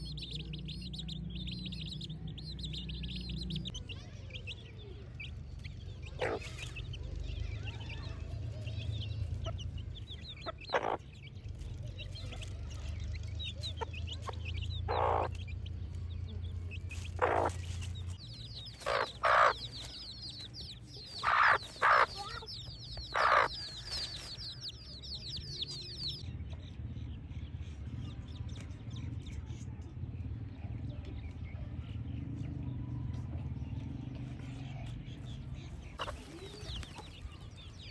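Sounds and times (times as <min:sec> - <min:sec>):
chicks peeping: 0:00.0 - 0:26.2, 0:30.8 - 0:37.9
hen clucking loudly: 0:06.0 - 0:06.8, 0:10.3 - 0:11.1, 0:13.6 - 0:15.4, 0:17.1 - 0:17.7, 0:18.7 - 0:20.4, 0:21.1 - 0:24.4, 0:36.0 - 0:37.1.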